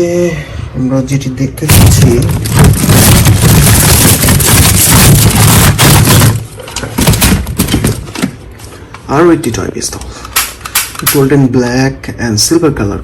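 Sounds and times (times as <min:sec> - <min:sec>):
low explosion boom: 0:01.7 - 0:06.4.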